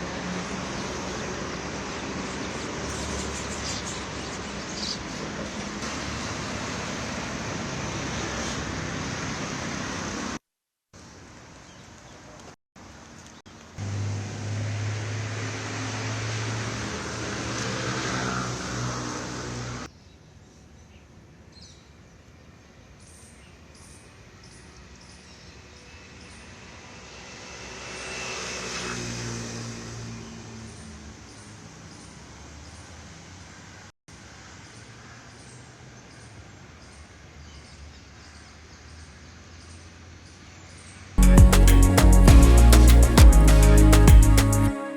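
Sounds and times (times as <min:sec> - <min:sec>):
motor vehicle passing by: 0:00.0 - 0:10.4, 0:13.8 - 0:19.9, 0:25.4 - 0:36.2
road traffic noise: 0:00.0 - 0:10.4, 0:11.0 - 0:19.9, 0:22.4 - 0:44.8
low engine hum: 0:13.8 - 0:17.7.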